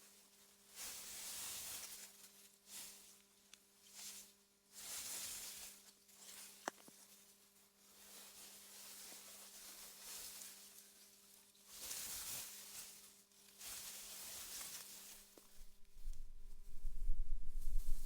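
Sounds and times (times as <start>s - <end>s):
wind through grass: 15.5s - 18.0s
faint steady hum: 15.6s - 18.0s.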